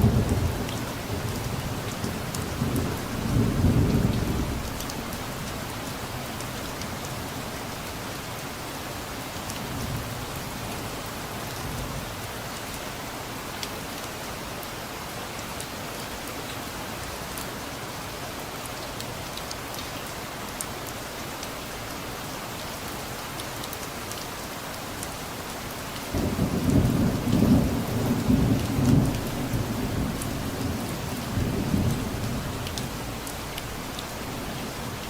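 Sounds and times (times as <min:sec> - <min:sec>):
low rumble of thunder: 0:00.0 - 0:05.4, 0:26.1 - 0:34.8
steady rain falling: 0:00.0 - 0:35.0.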